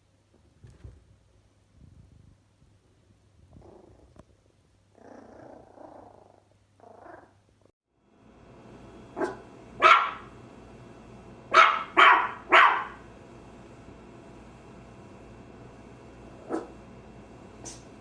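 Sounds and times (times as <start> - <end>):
puppy growling low: 3.5 - 4.2, 4.9 - 7.4
puppy barking: 9.2 - 10.3, 11.5 - 13.0, 16.4 - 16.7.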